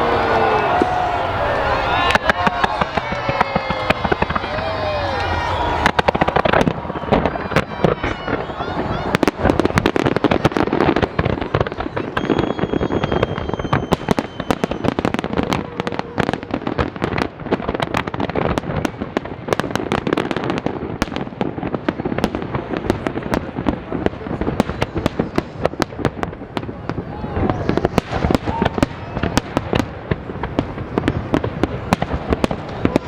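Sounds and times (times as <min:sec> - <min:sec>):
fireworks bangs and crackles: 0:00.0 - 0:33.0
thin falling whistle: 0:12.2 - 0:15.0.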